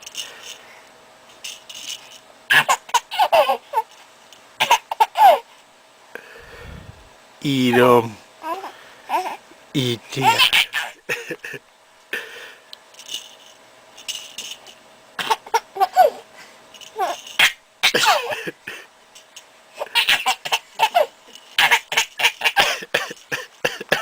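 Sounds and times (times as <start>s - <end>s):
baby laughing: 2.5s - 3.9s, 4.6s - 5.5s, 8.4s - 9.4s, 10.1s - 11.4s, 15.2s - 16.2s, 17.0s - 17.2s, 19.8s - 22.9s.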